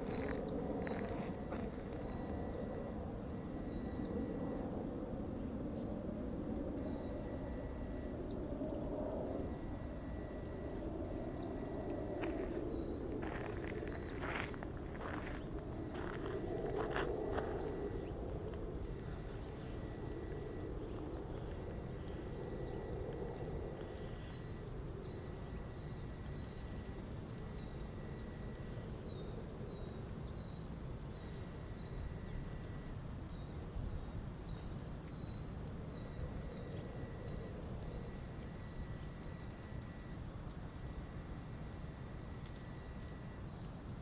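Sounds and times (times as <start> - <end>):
outdoor background noise: 0.0 - 44.0.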